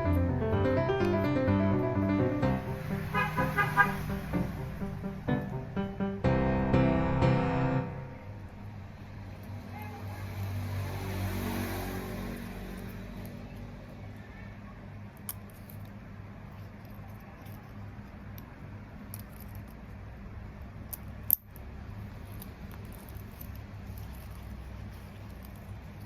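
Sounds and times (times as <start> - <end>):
bag strap clicks and rustles: 20.8 - 26.0.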